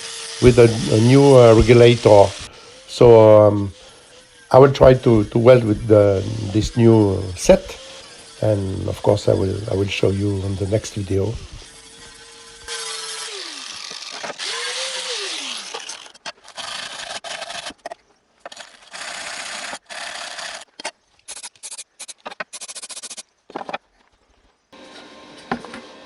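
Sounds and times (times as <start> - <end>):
welder crackling and hissing: 0.0 - 14.8.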